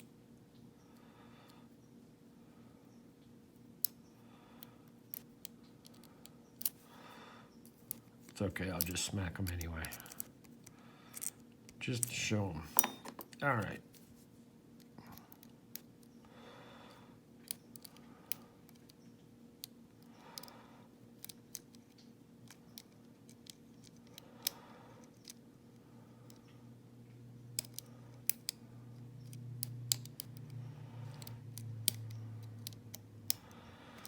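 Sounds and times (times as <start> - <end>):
lock pick clicking and scraping: 5.1 - 6.9, 8.8 - 13.4, 17.4 - 20.5, 21.1 - 25.4, 27.5 - 34.0.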